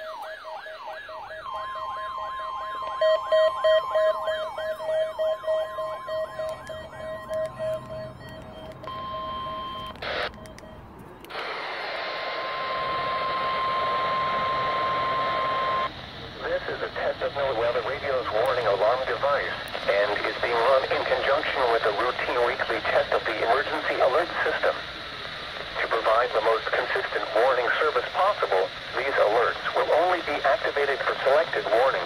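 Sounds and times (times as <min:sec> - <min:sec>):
rising siren-like alert tone: 0:00.0 - 0:11.0, 0:12.2 - 0:16.0
steady high tone: 0:00.0 - 0:22.5
pulsing lower tone: 0:00.2 - 0:10.9, 0:12.2 - 0:16.0
radio static hiss: 0:05.9 - 0:32.0.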